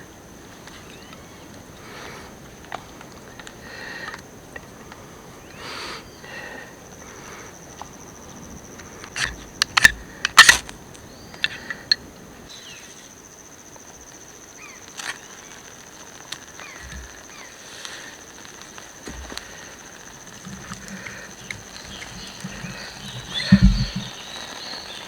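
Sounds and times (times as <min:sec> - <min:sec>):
sharp knocks and snaps: 0:09.1 - 0:10.8, 0:19.0 - 0:24.1.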